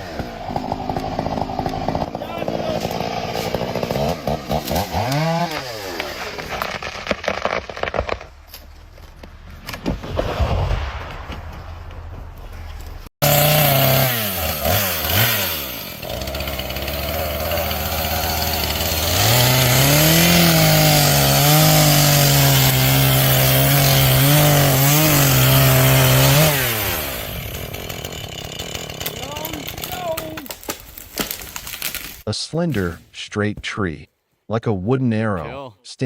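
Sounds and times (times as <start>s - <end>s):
chainsaw cutting wood: 0.0s - 8.4s, 13.2s - 32.3s.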